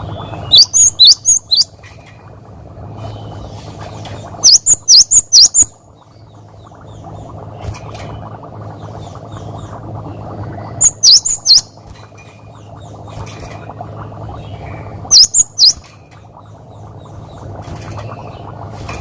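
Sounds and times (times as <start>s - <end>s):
steady low hum and hiss: 0.0s - 19.0s
bird singing sharp high notes: 10.8s - 11.8s, 15.1s - 15.8s.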